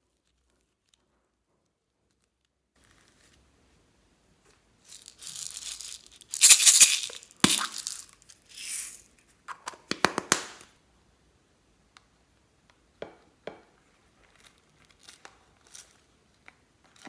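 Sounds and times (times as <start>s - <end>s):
foam beads and slime crackling: 4.9s - 9.0s.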